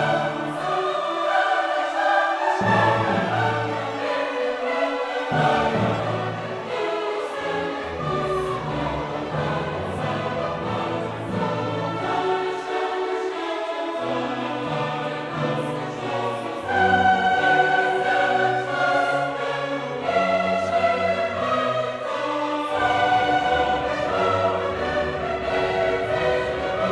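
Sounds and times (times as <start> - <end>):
choir singing held chords: 0.0 - 26.9
orchestral strings: 0.0 - 26.9.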